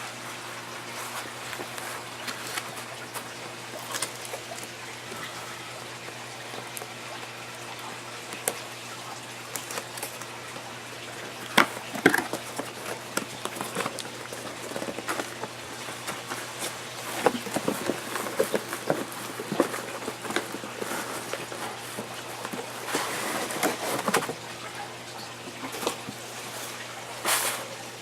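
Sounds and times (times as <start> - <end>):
cardboard and plastic packaging rustling: 0.0 - 7.2, 9.5 - 28.0.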